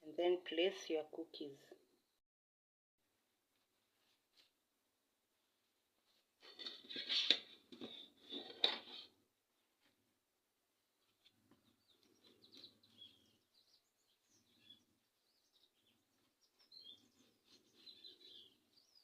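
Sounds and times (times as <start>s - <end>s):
small birds chirping: 11.0s - 19.0s.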